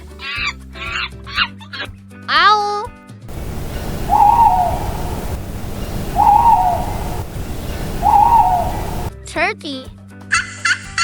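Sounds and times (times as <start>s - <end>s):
owl hooting: 3.3s - 9.1s
steady rushing hiss: 3.3s - 9.1s.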